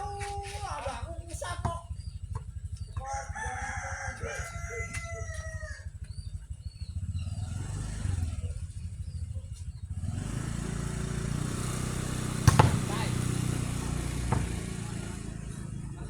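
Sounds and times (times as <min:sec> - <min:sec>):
rooster crowing: 0:03.0 - 0:06.0.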